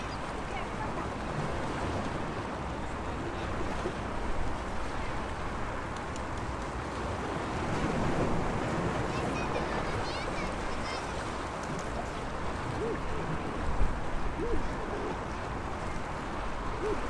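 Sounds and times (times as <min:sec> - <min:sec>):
sea waves washing: 0:00.0 - 0:17.0.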